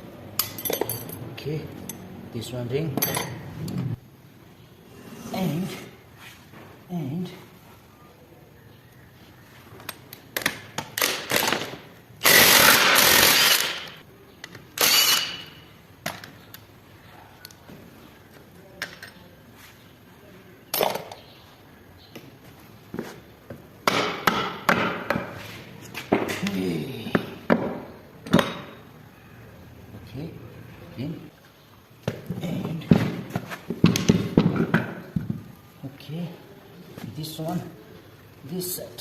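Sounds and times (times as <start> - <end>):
metal parts clinking and knocking: 0.4 - 2.0, 2.9 - 3.8
power tool bursts: 11.0 - 14.0, 14.8 - 15.5.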